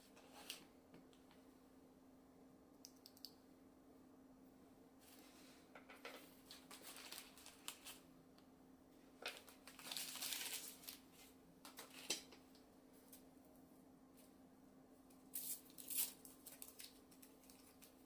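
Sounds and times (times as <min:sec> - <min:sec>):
faint steady hum: 0:00.0 - 0:18.0
crinkly rustling: 0:06.2 - 0:08.1, 0:09.2 - 0:12.3, 0:15.4 - 0:18.0.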